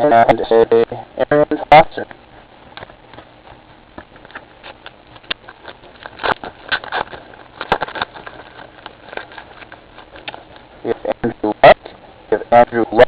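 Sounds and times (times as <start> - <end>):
cards being handled: 2.8 - 11.0
plastic wrapper crinkling: 4.1 - 10.9.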